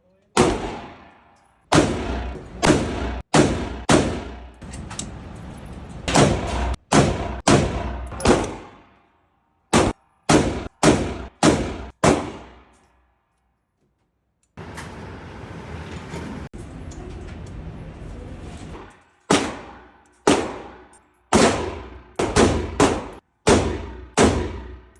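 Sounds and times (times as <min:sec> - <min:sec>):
rifle shots: 0:00.4 - 0:04.6, 0:06.1 - 0:08.9, 0:09.7 - 0:12.7, 0:19.3 - 0:24.9.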